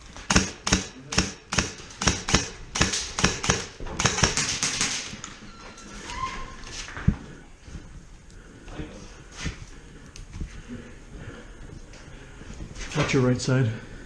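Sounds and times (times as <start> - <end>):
airsoft rifle shots: 0.3 - 5.2.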